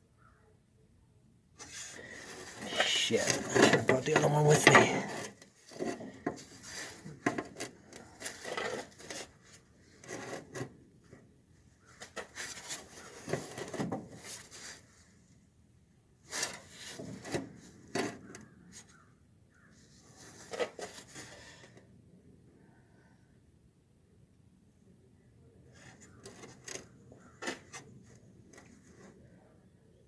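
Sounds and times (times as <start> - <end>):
radiator scraping against metal: 1.7 - 6.0.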